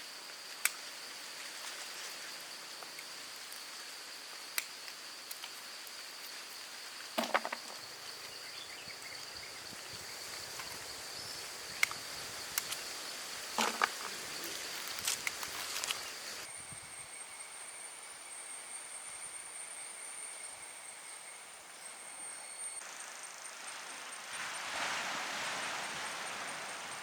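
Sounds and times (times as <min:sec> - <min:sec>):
insects droning: 0:00.0 - 0:27.0
higher-pitched insect drone: 0:03.6 - 0:24.7.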